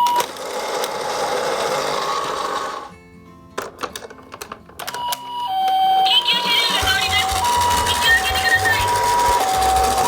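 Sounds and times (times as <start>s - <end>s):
toy ambulances whirring: 0.0s - 2.9s, 5.5s - 10.0s
toy two-tone siren: 4.9s - 10.0s.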